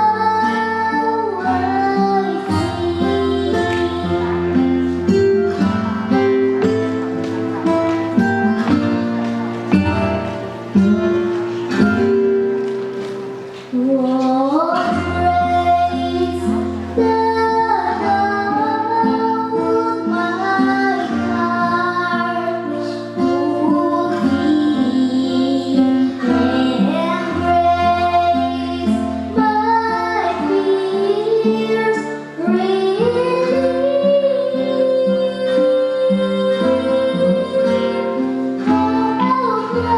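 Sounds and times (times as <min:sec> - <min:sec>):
woman singing: 0:00.0 - 0:05.2, 0:13.7 - 0:39.9
acoustic guitar: 0:00.0 - 0:39.9.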